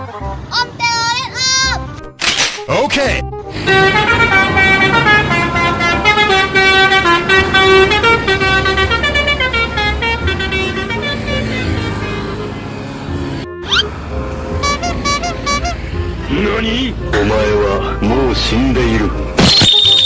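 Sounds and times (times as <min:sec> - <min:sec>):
musical bus horn tune: 0:00.0 - 0:00.5, 0:03.3 - 0:16.3.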